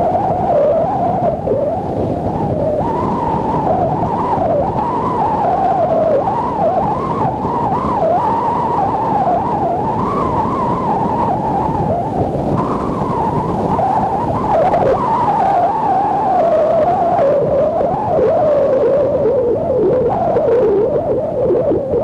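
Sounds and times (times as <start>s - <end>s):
strong wind howling and whistling: 0.0s - 22.0s
surf rushing: 0.0s - 22.0s.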